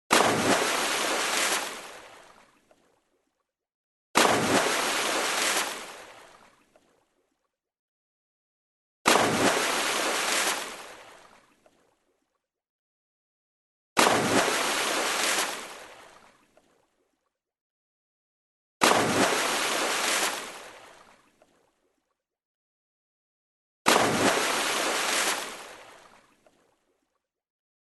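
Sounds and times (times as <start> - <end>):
water splashing: 0.1 - 3.1, 4.2 - 7.2, 9.1 - 12.1, 14.0 - 16.9, 18.8 - 21.7, 23.9 - 26.8.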